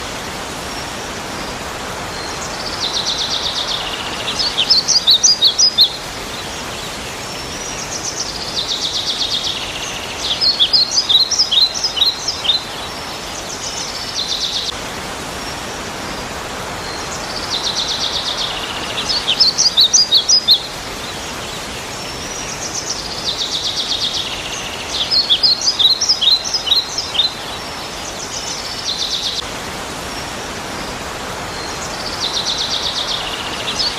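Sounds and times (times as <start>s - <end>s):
background hiss: 0.0s - 33.9s
bird song trill and whistles: 2.2s - 6.5s, 7.6s - 14.7s, 17.5s - 20.7s, 22.4s - 27.6s.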